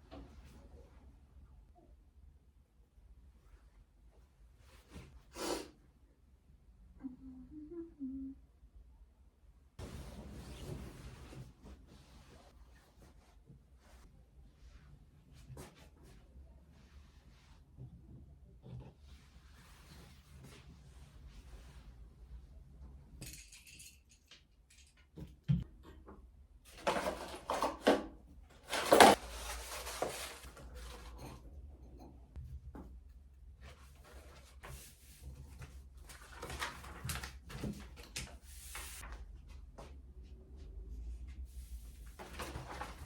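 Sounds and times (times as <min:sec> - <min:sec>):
objects being handled: 0:26.7 - 0:32.1
rustling and clattering: 0:26.7 - 0:39.1, 0:42.0 - 0:43.0.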